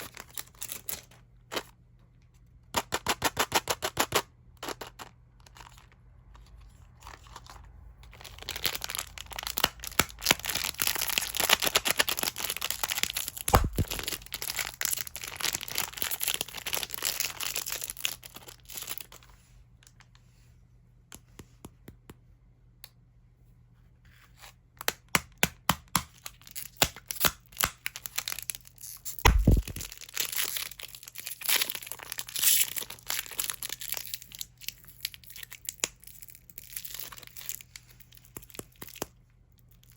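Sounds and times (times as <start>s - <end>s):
plastic wrappers crinkling: 7.0s - 19.2s, 27.8s - 39.2s
dull low thumps: 13.5s - 14.0s, 29.3s - 29.8s.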